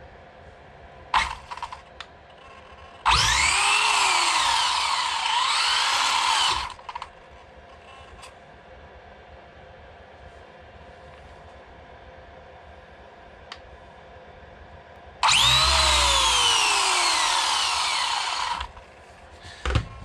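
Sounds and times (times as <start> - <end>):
electric motor whining: 3.0 - 7.0, 15.2 - 18.8.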